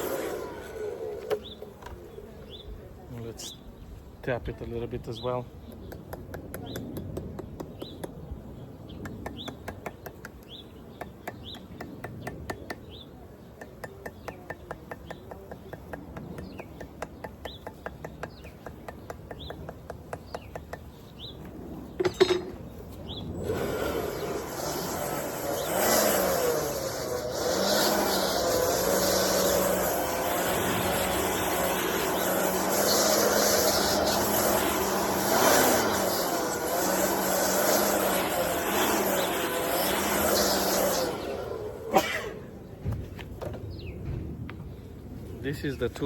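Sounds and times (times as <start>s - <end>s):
tapping on wooden hive box: 5.6s - 8.3s, 9.0s - 21.3s
loud wavering hum: 23.2s - 42.2s.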